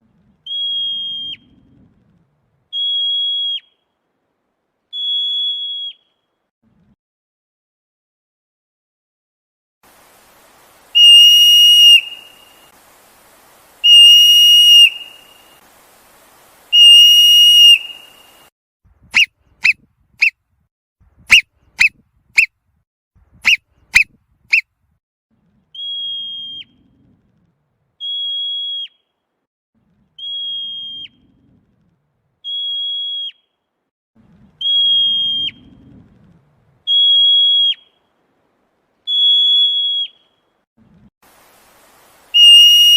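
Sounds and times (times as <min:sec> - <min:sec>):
marmot alarm whistles: 0:00.5 - 0:01.6, 0:02.7 - 0:03.8, 0:04.9 - 0:06.2, 0:11.0 - 0:12.7, 0:13.8 - 0:15.6, 0:16.7 - 0:18.5, 0:19.1 - 0:20.4, 0:21.3 - 0:22.5, 0:23.4 - 0:24.7, 0:25.8 - 0:26.8, 0:28.0 - 0:29.1, 0:30.2 - 0:31.3, 0:32.4 - 0:33.6, 0:34.6 - 0:35.8, 0:36.9 - 0:38.0, 0:39.1 - 0:40.5, 0:42.3 - 0:42.9.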